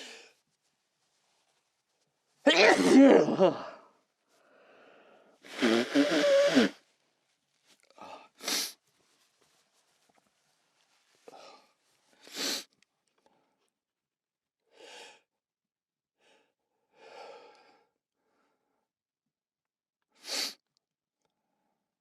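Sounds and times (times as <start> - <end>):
soft breaths and sighs: 0.0 - 2.2, 3.6 - 13.8, 16.2 - 18.9
person sneezing: 2.5 - 3.8, 5.5 - 6.8.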